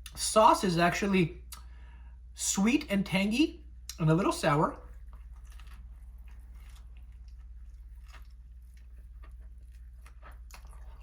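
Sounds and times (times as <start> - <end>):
steady low hum: 0.0 - 11.0
person chewing wetly: 4.8 - 11.0.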